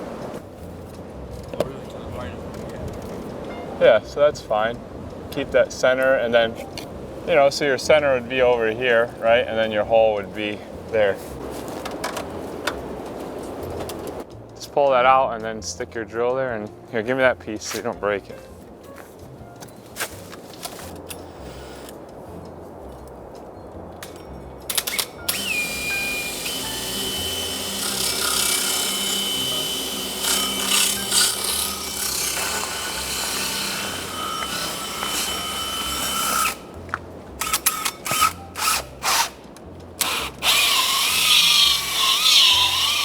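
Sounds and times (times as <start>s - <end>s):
power drill boring through wood: 21.1s - 21.9s, 24.9s - 36.8s, 37.4s - 39.4s, 40.0s - 43.0s.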